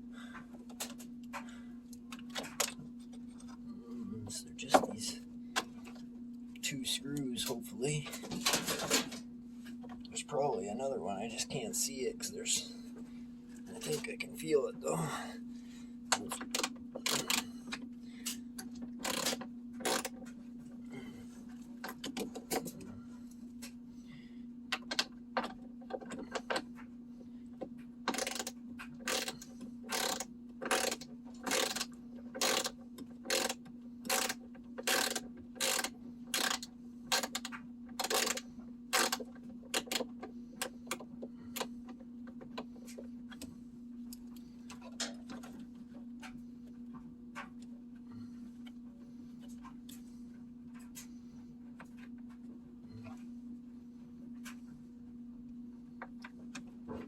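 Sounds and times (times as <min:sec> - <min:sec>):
low hum: 0:00.0 - 0:56.9
ratchet wrench clicking: 0:19.0 - 0:20.1, 0:28.1 - 0:39.2.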